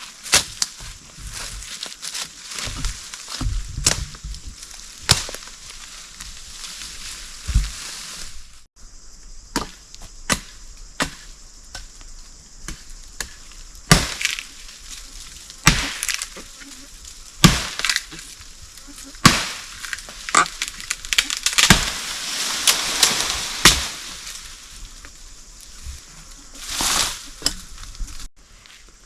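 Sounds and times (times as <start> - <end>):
chopping strikes on wood: 5.0 - 5.4, 9.5 - 11.9, 12.6 - 14.4, 15.6 - 16.4, 17.4 - 18.3, 19.2 - 22.0, 23.6 - 24.1.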